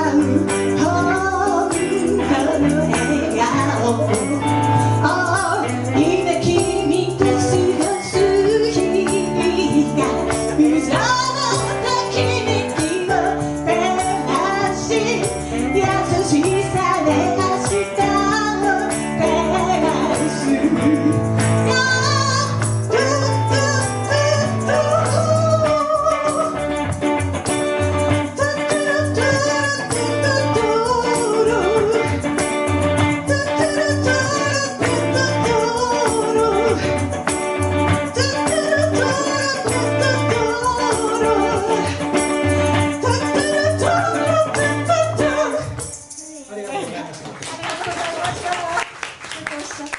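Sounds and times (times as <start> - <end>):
person singing: 0.0 - 47.0.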